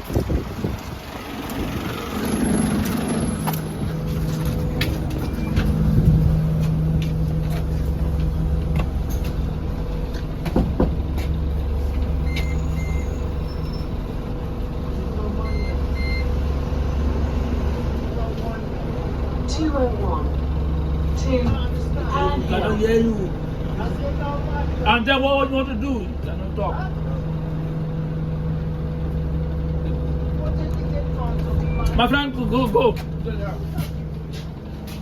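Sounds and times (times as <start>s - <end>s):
diesel bus engine drone: 0.0s - 35.0s
short electronic beeps: 12.2s - 13.9s, 15.4s - 16.4s.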